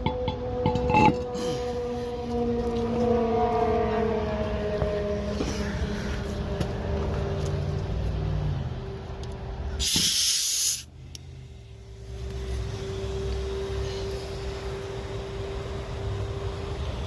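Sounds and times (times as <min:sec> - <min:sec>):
compressed air hissing: 0:09.8 - 0:10.9.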